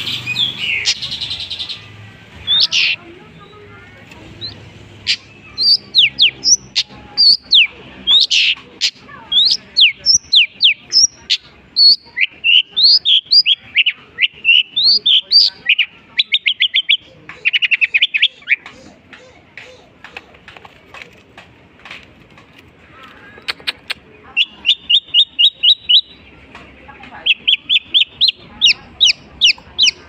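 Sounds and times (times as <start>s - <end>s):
bird singing whistled notes: 5.1s - 8.6s, 24.4s - 26.3s.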